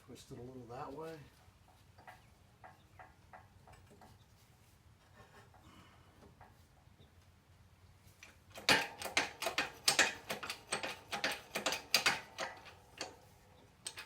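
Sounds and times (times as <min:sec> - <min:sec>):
metallic clicks and knocks: 0:01.6 - 0:04.2, 0:06.2 - 0:06.9, 0:08.2 - 0:14.0.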